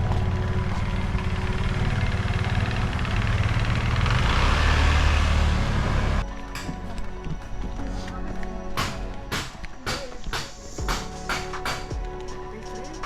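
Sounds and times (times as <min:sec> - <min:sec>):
vehicle engine running: 0:00.0 - 0:06.2.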